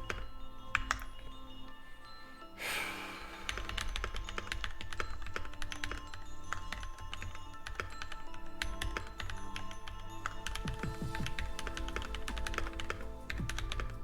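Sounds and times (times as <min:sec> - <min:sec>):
background music: 0:00.0 - 0:14.0
mechanical keyboard typing: 0:03.4 - 0:14.0.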